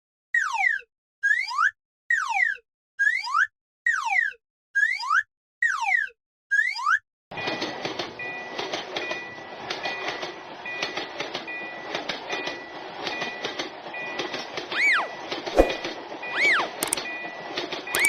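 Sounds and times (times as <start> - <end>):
passing train rumble and clatter: 7.3 - 18.0
railroad crossing bell ringing: 7.3 - 18.0.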